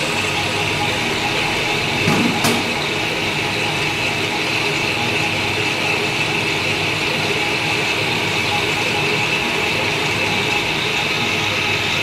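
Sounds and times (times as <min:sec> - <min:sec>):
lathe running with whine: 0:00.0 - 0:12.0.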